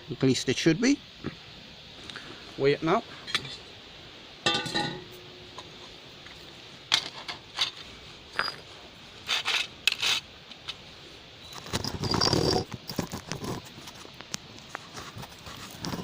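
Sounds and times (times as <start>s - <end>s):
metal ingot clinking: 4.4s - 5.8s.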